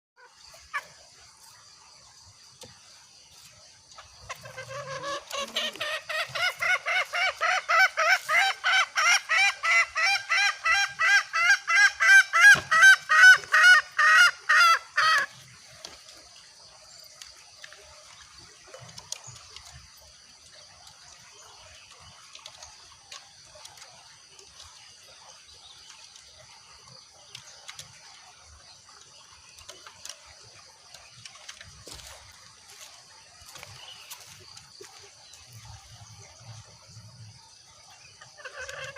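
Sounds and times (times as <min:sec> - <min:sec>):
junglefowl hen clucking: 0:04.0 - 0:15.4, 0:38.2 - 0:38.9.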